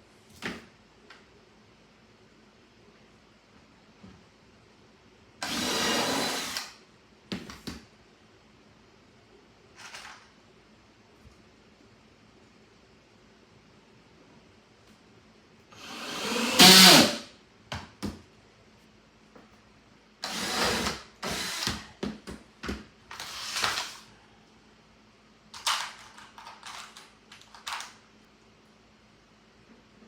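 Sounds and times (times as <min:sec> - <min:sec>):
electric drill motors running: 0:05.4 - 0:06.8, 0:15.8 - 0:17.2, 0:20.2 - 0:21.9.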